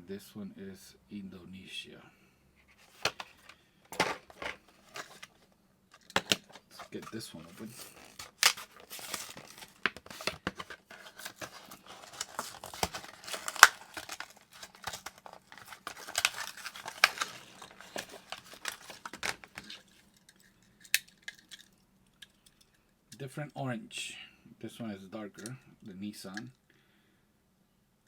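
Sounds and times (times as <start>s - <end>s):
plastic blister crinkling: 2.8s - 21.7s
cardboard tearing: 6.9s - 19.8s.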